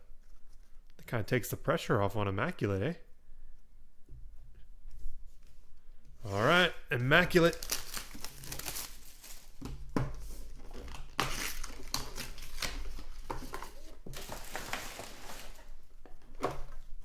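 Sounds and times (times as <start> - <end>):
plastic wrapping crinkling and tearing: 7.0 - 15.9.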